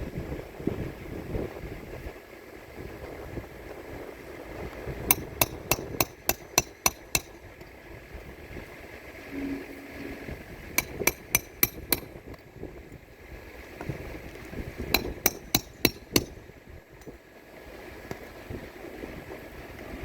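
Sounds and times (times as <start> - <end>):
hammer striking roofing nails: 5.1 - 7.4, 15.0 - 16.4.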